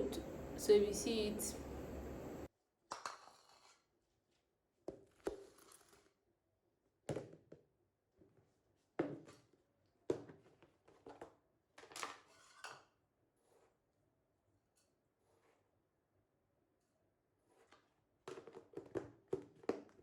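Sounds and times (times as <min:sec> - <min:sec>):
objects knocking and clunking: 0:18.3 - 0:20.0.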